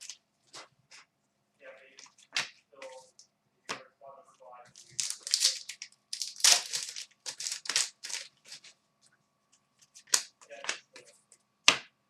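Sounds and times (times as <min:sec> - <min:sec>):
cards and packaging rustling: 0:04.7 - 0:08.8.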